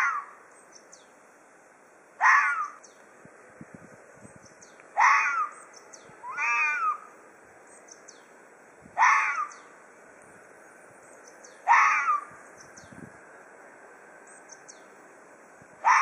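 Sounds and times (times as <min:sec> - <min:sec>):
fox screeching calls: 0:00.0 - 0:00.4, 0:02.2 - 0:02.9, 0:04.9 - 0:07.2, 0:09.0 - 0:09.7, 0:11.4 - 0:12.4, 0:15.8 - 0:16.0
fox wavering call: 0:00.0 - 0:00.4, 0:02.2 - 0:02.9, 0:04.9 - 0:07.2, 0:09.0 - 0:09.7, 0:11.4 - 0:12.4, 0:15.8 - 0:16.0.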